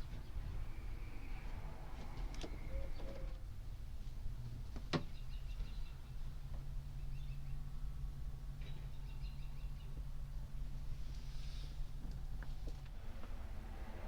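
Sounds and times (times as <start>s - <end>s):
steady low rumble: 5.9s - 14.0s.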